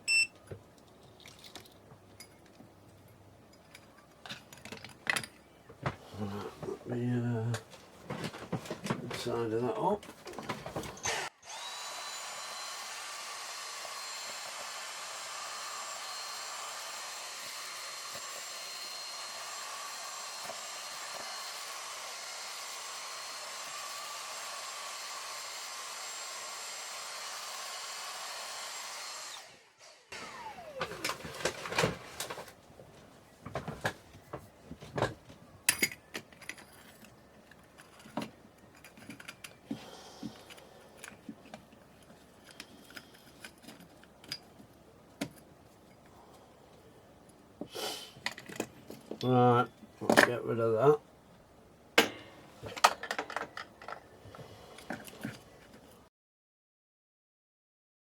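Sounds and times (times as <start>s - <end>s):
clicks and knocks of small parts: 0.8s - 2.6s, 3.5s - 5.5s, 35.0s - 39.8s, 40.4s - 45.5s, 52.0s - 54.1s
hot air gun blowing: 11.0s - 31.2s, 47.7s - 48.2s.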